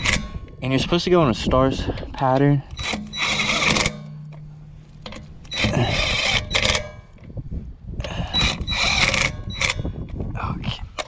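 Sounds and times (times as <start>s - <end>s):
impact wrench tightening bolts: 0.0s - 0.6s, 2.7s - 7.3s, 8.2s - 10.0s.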